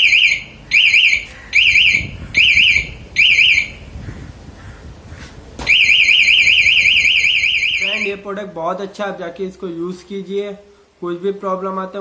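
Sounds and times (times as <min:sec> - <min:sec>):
warbling alarm siren: 0:00.0 - 0:03.9, 0:05.7 - 0:08.2.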